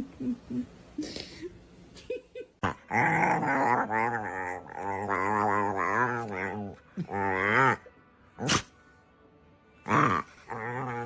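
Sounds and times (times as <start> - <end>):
dog growling: 2.6 - 8.7, 9.8 - 11.0.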